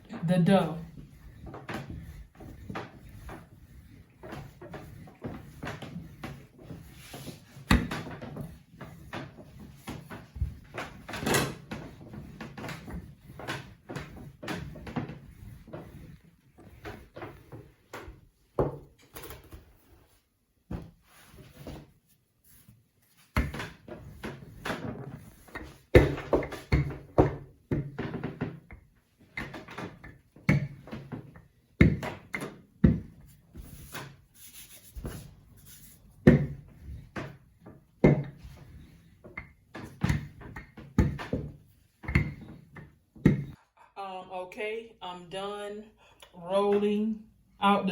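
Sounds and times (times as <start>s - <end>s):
rolling pin knocking on counter: 31.8s - 33.2s.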